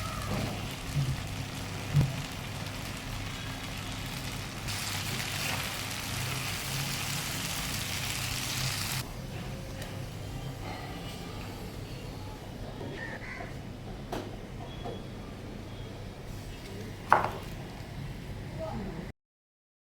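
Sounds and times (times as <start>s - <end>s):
chicken sizzling in oil: 0.0s - 9.0s.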